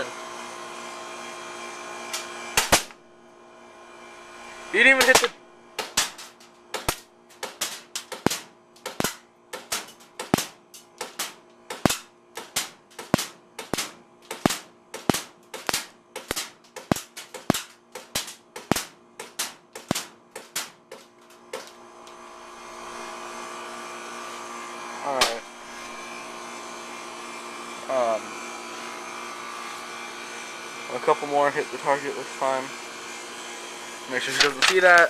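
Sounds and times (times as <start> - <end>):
airsoft pistol firing pops: 2.6 - 3.0, 5.0 - 20.8.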